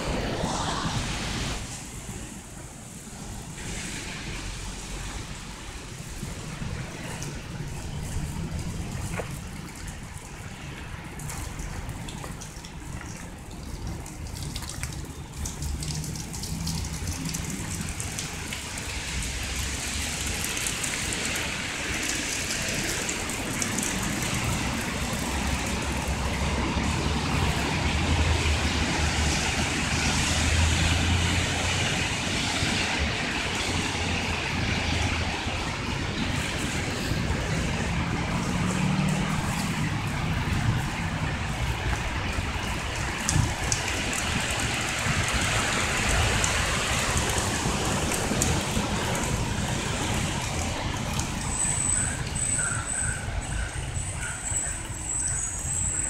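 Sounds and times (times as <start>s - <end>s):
tyres hissing on road: 0.0s - 56.0s
vehicle engine hum: 0.0s - 56.0s.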